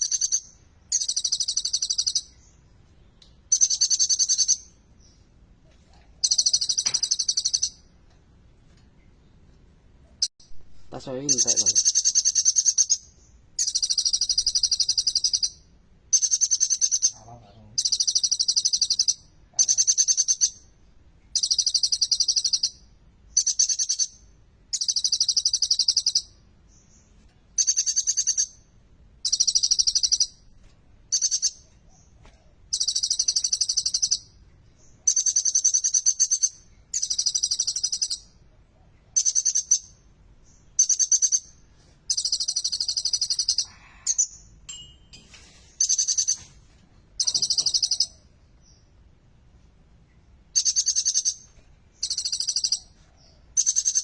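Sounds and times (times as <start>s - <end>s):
sunbird high rapid chattering: 11.0s - 15.6s, 47.2s - 48.2s.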